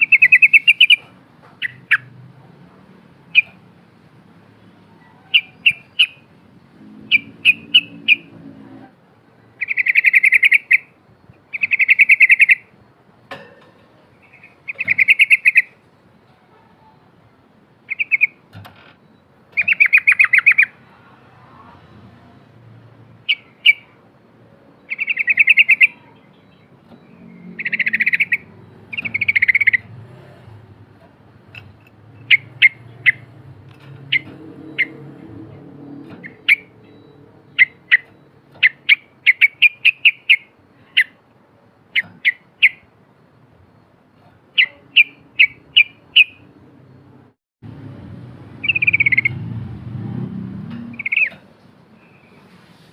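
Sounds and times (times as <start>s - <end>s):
bulbul singing: 0.0s - 2.2s, 3.2s - 3.7s, 4.5s - 8.4s, 9.5s - 12.8s, 14.1s - 15.9s, 17.8s - 21.0s, 21.8s - 24.0s, 24.8s - 47.2s, 48.6s - 49.6s, 50.7s - 52.4s.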